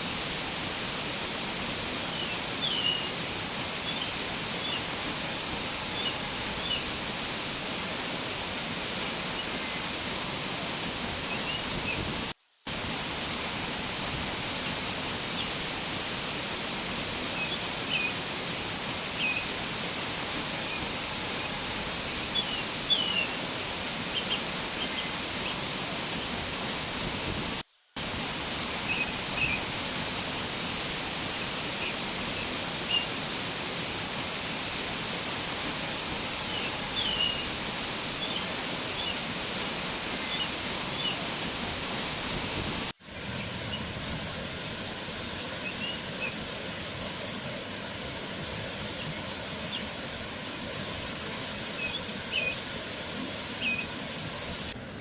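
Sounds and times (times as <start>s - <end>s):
small birds chirping: 20.6s - 23.4s.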